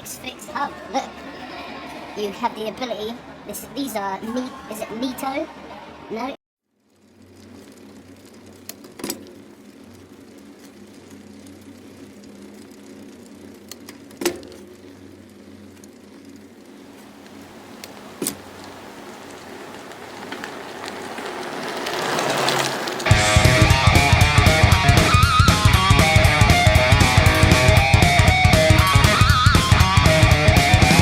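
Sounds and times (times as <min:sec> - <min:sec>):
electric guitar rock music: 0:23.1 - 0:31.0.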